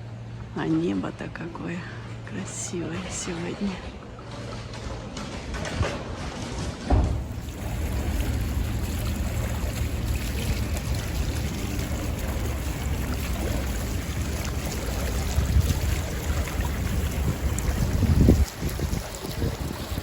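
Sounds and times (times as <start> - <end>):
wind blowing across microphone: 6.9 - 20.0.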